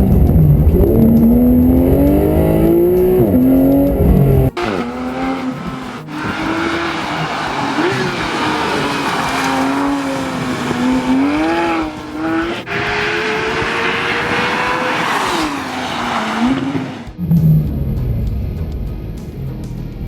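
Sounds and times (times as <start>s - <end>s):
car engine revving: 0.0s - 18.7s
exhaust crack: 0.0s - 20.0s
low engine hum: 0.0s - 20.0s.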